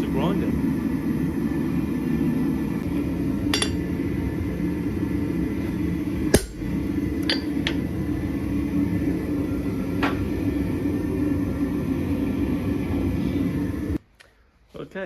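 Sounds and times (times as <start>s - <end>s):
forge droning: 0.0s - 14.0s
hammer striking steel on anvil: 3.5s - 3.9s, 6.3s - 7.8s.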